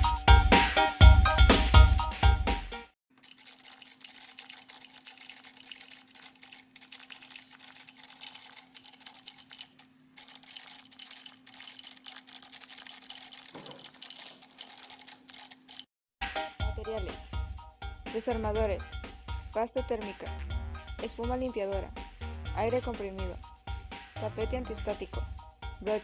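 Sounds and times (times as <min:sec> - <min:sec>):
fast crackling clicks: 0:03.2 - 0:15.9.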